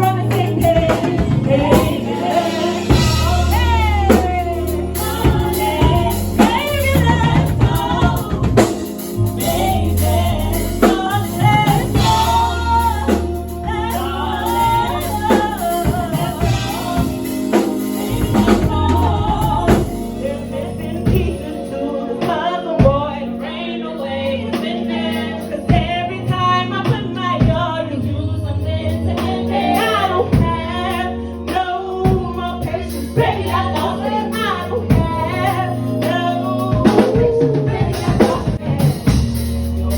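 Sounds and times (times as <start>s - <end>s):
drum kit: 0.0s - 23.4s, 24.5s - 27.8s, 28.9s - 39.9s
bass: 0.0s - 39.9s
person singing: 0.0s - 39.9s.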